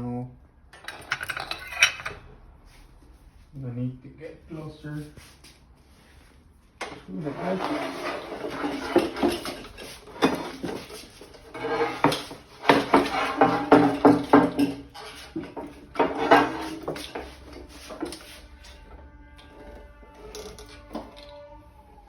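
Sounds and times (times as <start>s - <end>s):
tools clattering on work surface: 0.7s - 2.3s, 6.8s - 18.7s.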